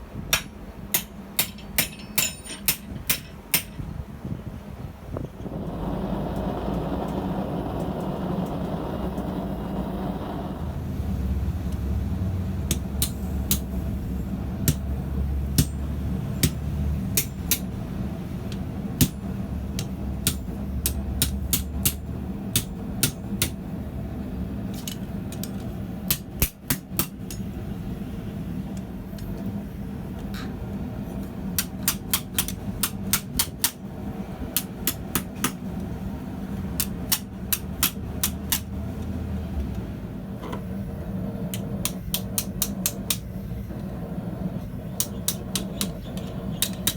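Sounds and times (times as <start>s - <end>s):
hammer striking steel on anvil: 0.3s - 3.9s, 12.6s - 13.8s, 14.6s - 17.8s, 18.5s - 23.6s, 26.1s - 27.5s, 31.6s - 33.8s, 34.5s - 35.6s, 36.8s - 38.7s, 41.6s - 43.3s, 45.0s - 46.9s
low hum: 5.2s - 18.5s.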